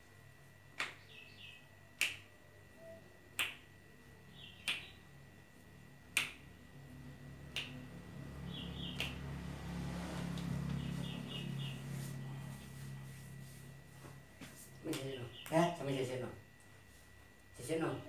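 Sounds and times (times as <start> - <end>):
sharp snap: 0.8 - 1.0, 2.0 - 2.3, 3.4 - 3.6, 4.6 - 4.9, 6.1 - 6.4, 7.5 - 7.8, 8.9 - 9.2.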